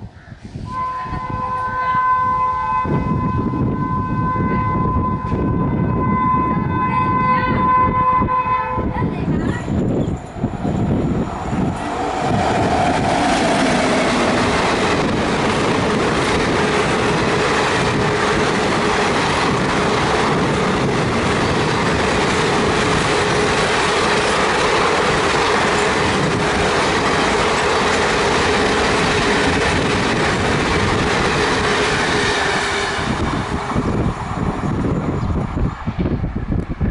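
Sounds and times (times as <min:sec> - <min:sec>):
train coaches rushing past: 0:00.6 - 0:36.9
wheels clattering on rails: 0:09.1 - 0:36.8.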